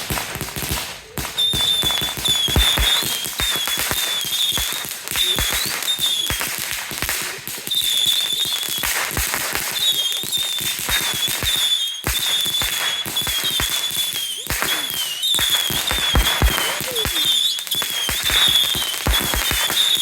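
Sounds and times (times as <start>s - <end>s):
fireworks cracking and popping: 0.0s - 20.0s
fireworks whistling: 0.0s - 20.0s.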